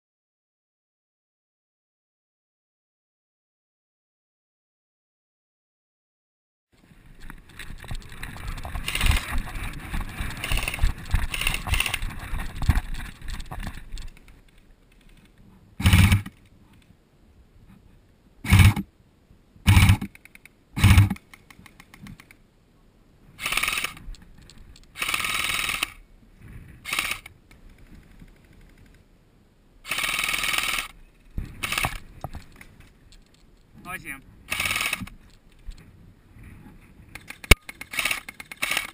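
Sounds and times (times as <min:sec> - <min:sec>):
rustling movement: 0:06.8 - 0:16.9
airsoft guns firing: 0:15.8 - 0:16.3, 0:18.5 - 0:18.8, 0:19.7 - 0:20.1, 0:20.8 - 0:21.2.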